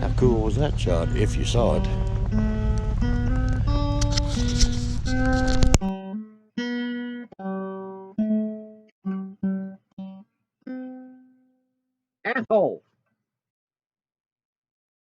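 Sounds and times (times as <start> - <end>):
outdoor noise: 0.0 - 5.9
plucked guitar notes: 0.0 - 11.4.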